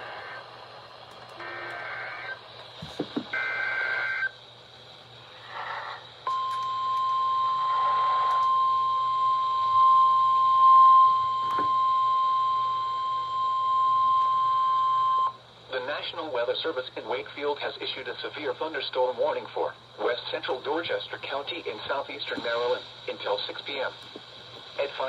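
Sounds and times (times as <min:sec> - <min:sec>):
radio hiss and hum: 0:00.0 - 0:10.5, 0:15.2 - 0:25.0
steady warning alarm tone: 0:01.4 - 0:02.4, 0:03.3 - 0:04.4, 0:05.6 - 0:15.4.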